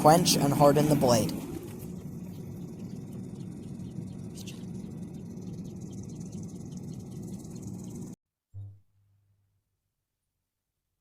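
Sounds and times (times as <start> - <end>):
forge burner roaring: 0.0 - 8.2.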